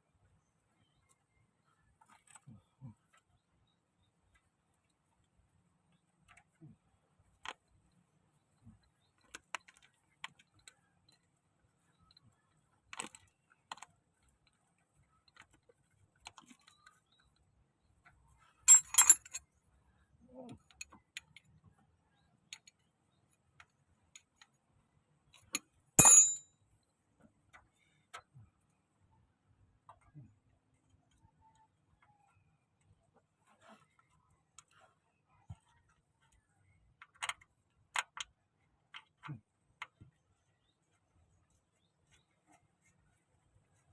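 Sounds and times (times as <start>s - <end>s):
metal tools clinking: 18.7s - 19.4s, 26.0s - 26.4s.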